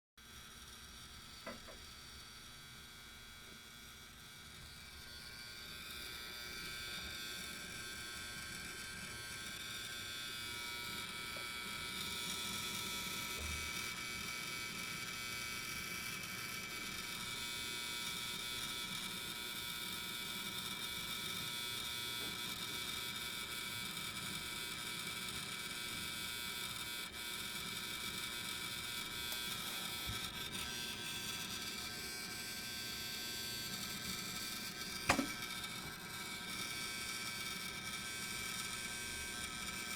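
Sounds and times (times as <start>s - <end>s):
hard drive buzzing whine: 0.2s - 39.9s
sharp knock: 35.1s - 35.4s.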